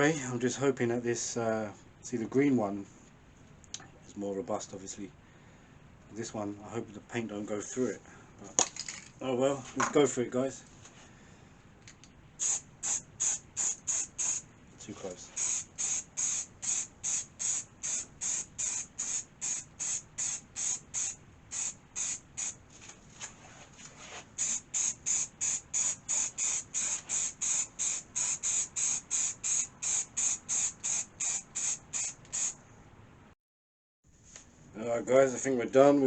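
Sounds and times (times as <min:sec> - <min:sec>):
spray paint can hissing: 0:12.4 - 0:14.4, 0:15.3 - 0:22.6, 0:24.4 - 0:32.6.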